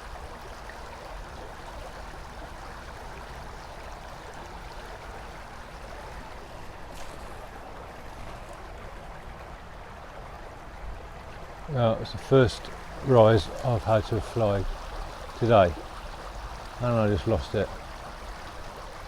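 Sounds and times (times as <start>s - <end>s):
river water rushing: 0.0s - 19.0s.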